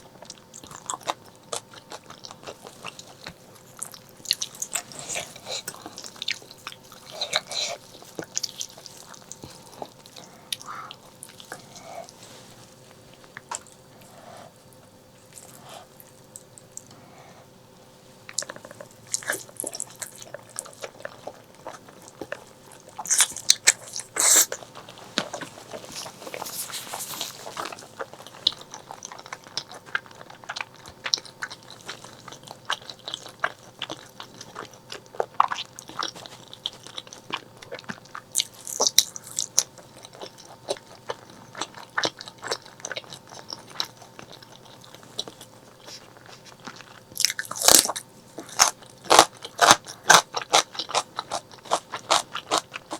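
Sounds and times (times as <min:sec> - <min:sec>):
wet chewing and smacking: 0:00.0 - 0:17.0, 0:18.2 - 0:52.9.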